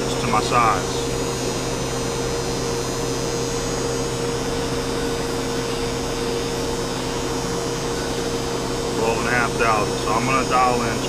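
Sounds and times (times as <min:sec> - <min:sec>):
metal lathe motor hum: 0:00.0 - 0:11.0.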